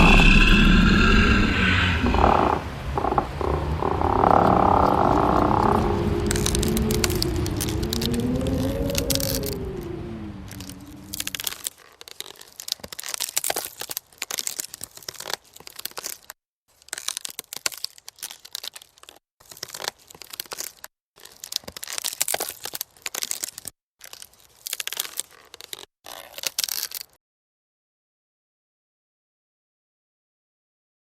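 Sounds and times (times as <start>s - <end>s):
harsh crunching and tearing: 0.0s - 27.2s.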